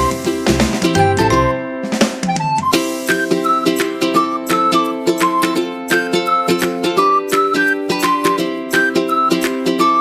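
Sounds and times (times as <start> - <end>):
plucked-string tune: 0.0 - 10.0.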